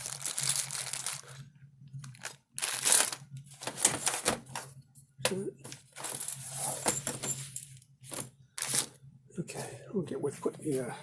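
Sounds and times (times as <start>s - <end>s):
packaging rustling: 0.0s - 1.4s, 2.0s - 4.6s, 8.1s - 9.0s
faint steady hum: 0.0s - 11.0s.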